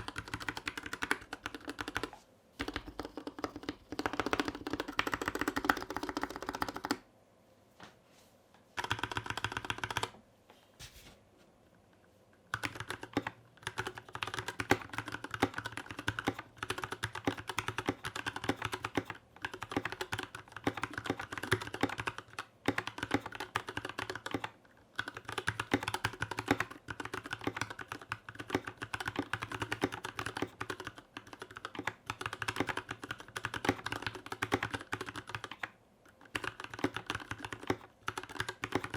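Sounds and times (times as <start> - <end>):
typing on keyboard: 0.0 - 7.0, 8.8 - 10.2, 12.5 - 38.9.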